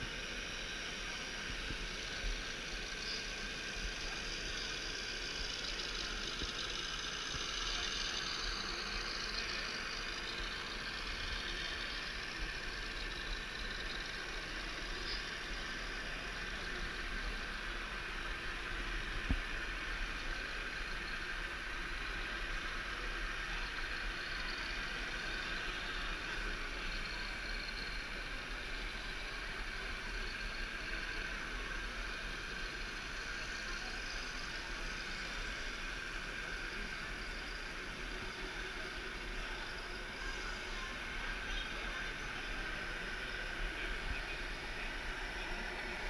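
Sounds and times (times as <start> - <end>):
faint whining tones: 0.0 - 46.0
mechanical hum: 0.0 - 46.0.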